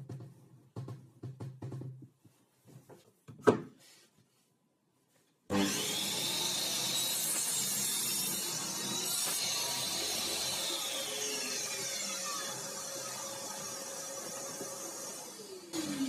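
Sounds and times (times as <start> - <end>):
electric jigsaw sawing wood: 5.5 - 16.0.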